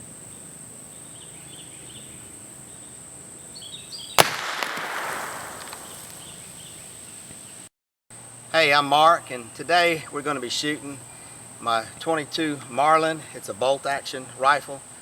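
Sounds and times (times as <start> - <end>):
faint chirping: 0.2 - 7.7
rifle shot with echo: 4.2 - 6.4.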